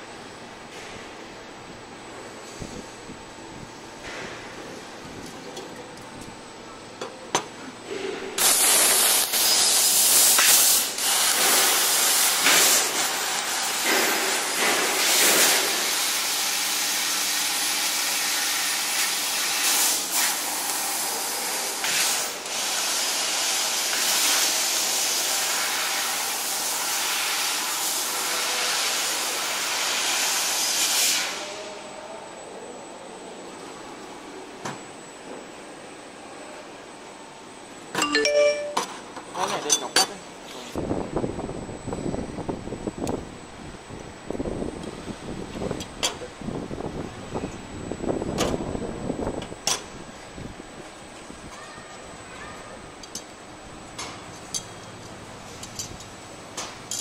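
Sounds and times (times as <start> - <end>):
laser cutter gas hiss: 8.4 - 31.6.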